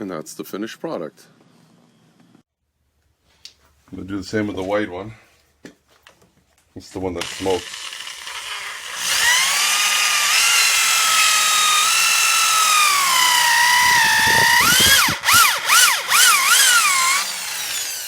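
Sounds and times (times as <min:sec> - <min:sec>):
electric drill whining under load: 0:07.2 - 0:18.0.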